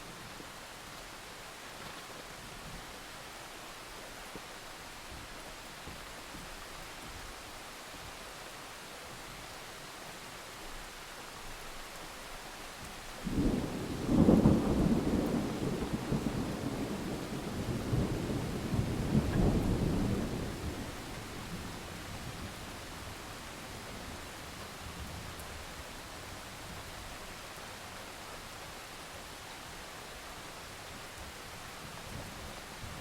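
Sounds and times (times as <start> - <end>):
rain hissing: 10.6 - 33.0
thunderclap rumbling: 13.3 - 22.3.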